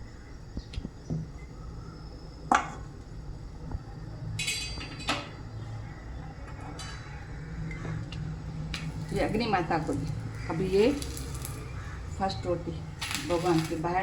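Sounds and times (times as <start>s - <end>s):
steady low hum: 0.0s - 14.0s
utensils clinking on griddle: 4.4s - 5.3s, 13.0s - 13.9s.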